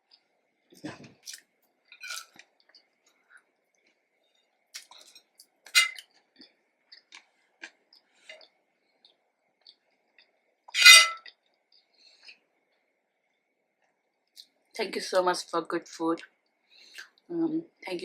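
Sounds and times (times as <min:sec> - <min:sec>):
person chewing food: 0:00.8 - 0:10.4.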